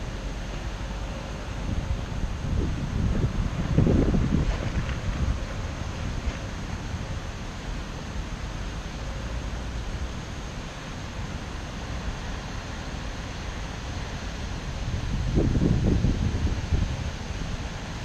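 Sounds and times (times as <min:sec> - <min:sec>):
strong wind rushing: 0:01.6 - 0:05.4, 0:14.7 - 0:17.6.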